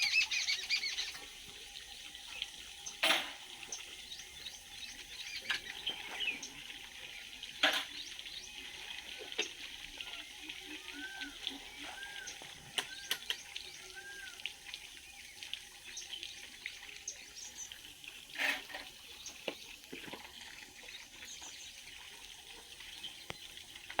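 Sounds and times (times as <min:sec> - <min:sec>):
small birds chirping: 0:00.0 - 0:18.0, 0:19.0 - 0:24.0
loud noisy bird call: 0:10.0 - 0:14.6
whistled bird notes: 0:10.1 - 0:14.4.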